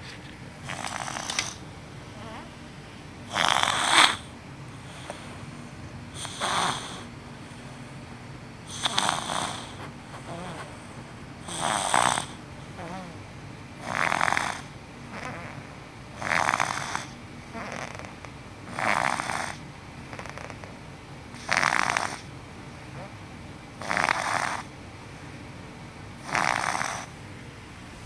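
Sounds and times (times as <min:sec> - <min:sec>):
baby snoring: 0:00.6 - 0:02.5, 0:03.3 - 0:04.3, 0:06.2 - 0:07.1, 0:08.7 - 0:10.8, 0:11.4 - 0:13.2, 0:13.8 - 0:20.7, 0:21.4 - 0:22.3, 0:23.8 - 0:24.7, 0:26.2 - 0:27.2.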